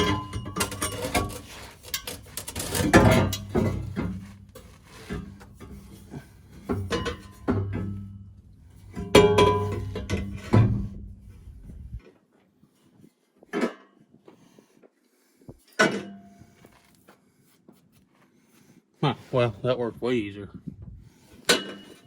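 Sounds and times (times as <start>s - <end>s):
metal parts knocking: 0.0s - 4.2s.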